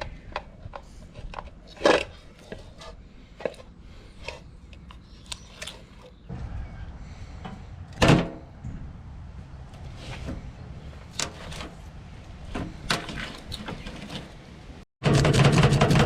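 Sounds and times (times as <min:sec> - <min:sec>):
low rumble: 0:06.3 - 0:13.0.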